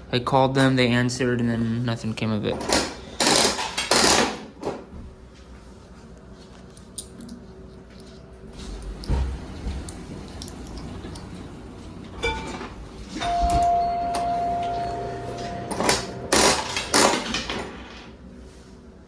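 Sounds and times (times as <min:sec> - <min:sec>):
steady electronic tone: 0:13.2 - 0:16.7.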